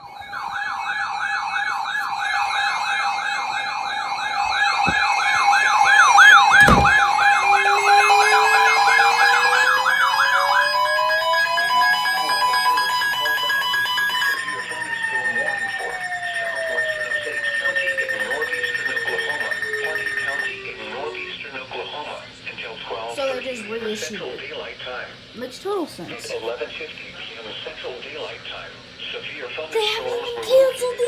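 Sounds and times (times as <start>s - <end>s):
fast warbling siren tone: 0.0s - 21.5s
steady alert tones: 3.2s - 7.7s
thump: 4.8s - 5.1s, 6.6s - 7.1s.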